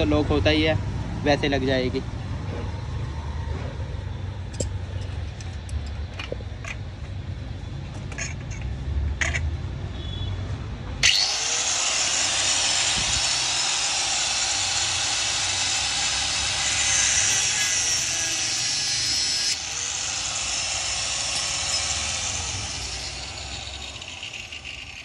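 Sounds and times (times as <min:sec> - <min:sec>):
angle grinder cutting steel chain: 0:11.0 - 0:25.0.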